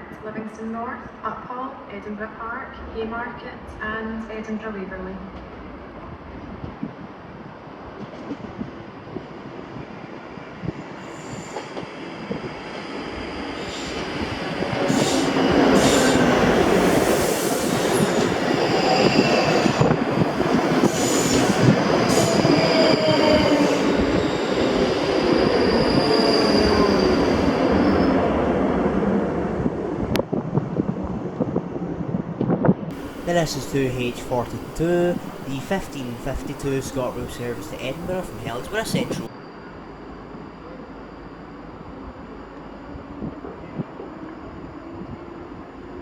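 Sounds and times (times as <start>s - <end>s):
passenger train passing: 13.2s - 29.9s, 32.9s - 39.3s.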